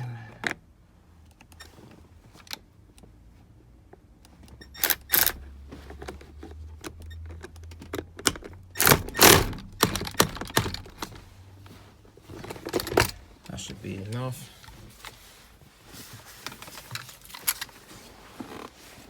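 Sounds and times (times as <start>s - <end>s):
wrench metallic clicks and knocks: 7.0s - 11.1s.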